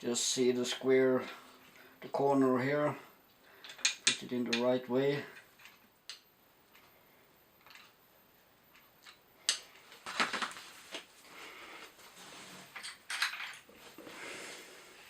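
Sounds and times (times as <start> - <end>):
small hard clicks and knocks: 3.6 - 4.7.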